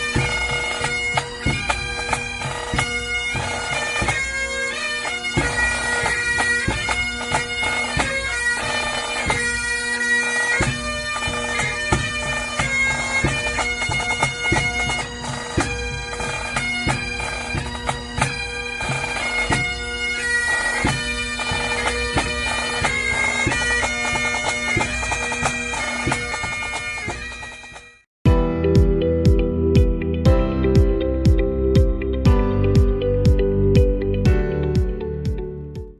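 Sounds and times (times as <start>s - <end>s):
bagpipes playing: 0.0s - 28.0s.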